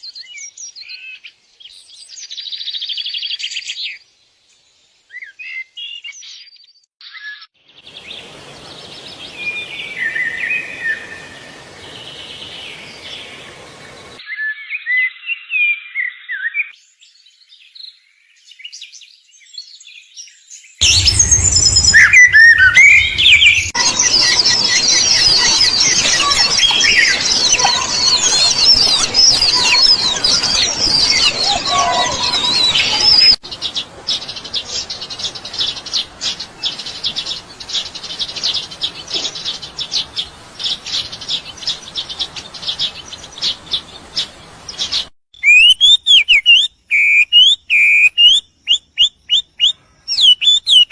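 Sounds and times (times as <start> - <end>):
small birds chirping and twittering: 0.0 - 50.9
brief low rumble: 20.8 - 25.2.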